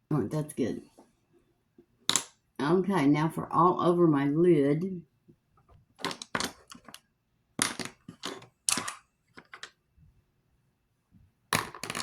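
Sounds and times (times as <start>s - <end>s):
cosmetics clicking and clattering: 6.0s - 9.8s.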